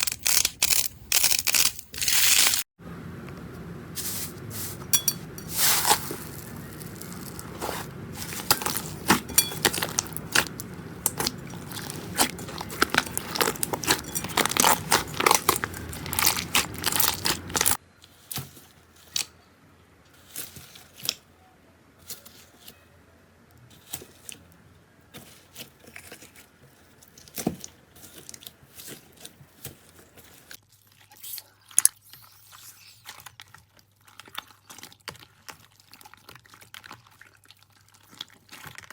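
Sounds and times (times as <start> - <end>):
slime crackling and popping: 5.5 - 17.8.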